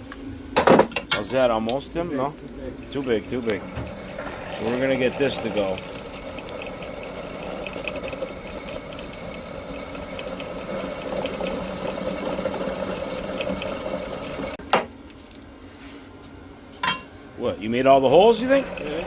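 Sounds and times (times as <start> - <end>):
electric drill boring metal: 2.8 - 14.6, 18.0 - 19.0.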